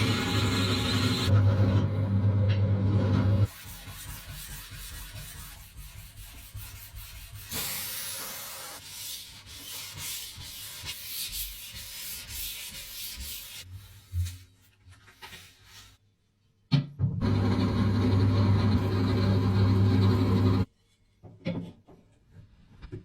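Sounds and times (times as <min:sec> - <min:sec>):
hand sanding with sandpaper: 0:03.5 - 0:14.4.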